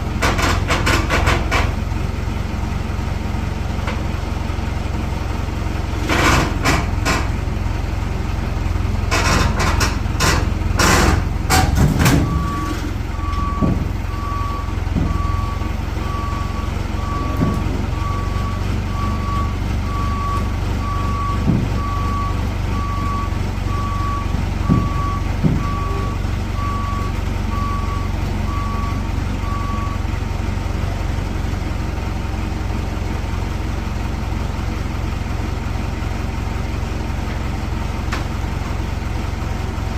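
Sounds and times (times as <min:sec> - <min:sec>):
diesel engine running: 0:00.0 - 0:39.9
backup alarm beeping: 0:12.2 - 0:30.0.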